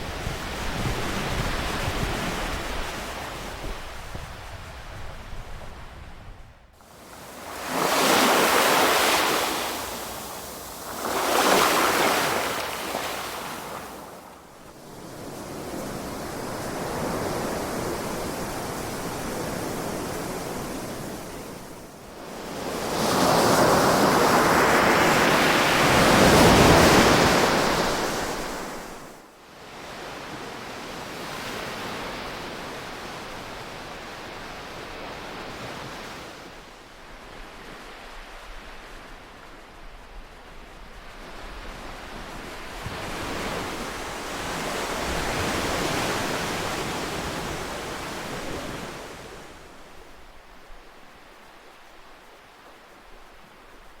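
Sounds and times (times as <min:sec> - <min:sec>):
ocean waves crashing: 0:06.8 - 0:21.8, 0:22.5 - 0:29.2
hiss of surf: 0:06.8 - 0:54.0.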